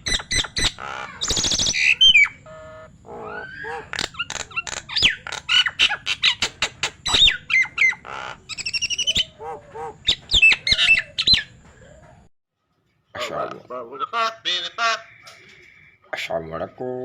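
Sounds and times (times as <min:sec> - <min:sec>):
myna bird calling: 0:00.0 - 0:12.1.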